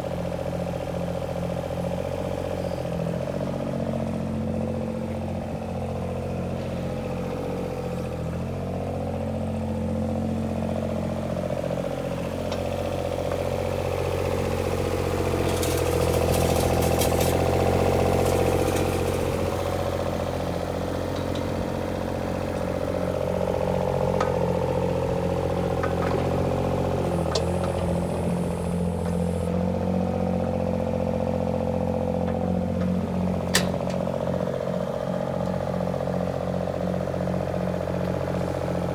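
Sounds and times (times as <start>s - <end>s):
excavator diesel engine running: 0.0s - 38.9s
metallic clatter: 15.4s - 17.6s
hydraulic whine: 26.2s - 29.6s.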